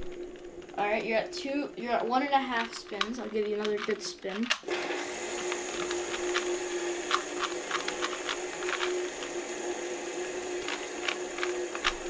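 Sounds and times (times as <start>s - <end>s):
steady hum: 0.0s - 12.0s
puzzle cube clicking: 2.4s - 4.7s, 5.3s - 9.4s, 10.5s - 12.0s.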